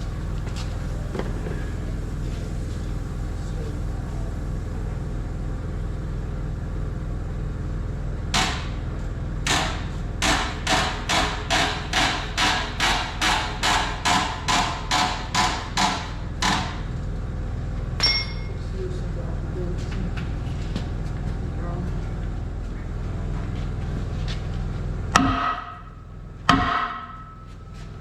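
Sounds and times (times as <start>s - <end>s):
steady low hum: 0.0s - 28.0s
hammer striking metal: 8.4s - 8.8s, 9.4s - 16.8s, 18.0s - 18.5s, 25.2s - 27.6s
sharp metallic clink: 18.0s - 18.6s.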